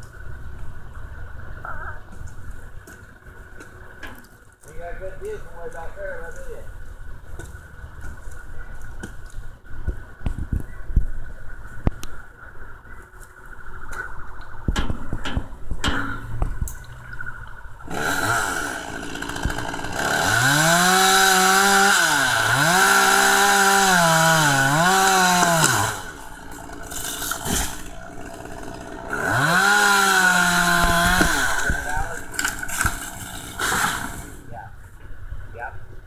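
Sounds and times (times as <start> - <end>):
chainsaw revving: 17.9 - 34.4.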